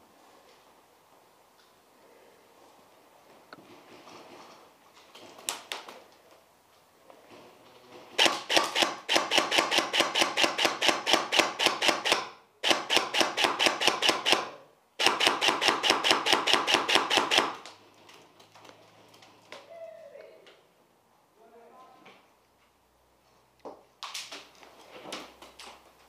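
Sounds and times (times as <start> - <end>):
airsoft gun automatic fire: 8.2 - 17.7.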